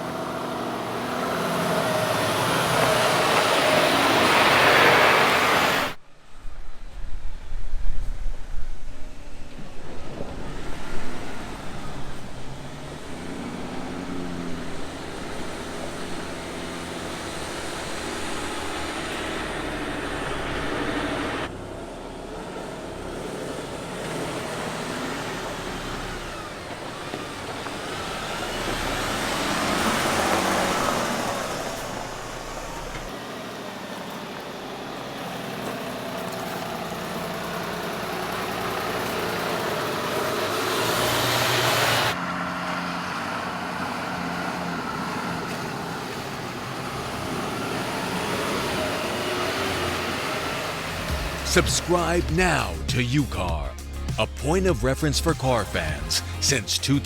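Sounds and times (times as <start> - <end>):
tyre and road noise: 0.0 - 6.1, 6.8 - 33.2
truck diesel engine running: 11.7 - 21.5, 49.4 - 57.0.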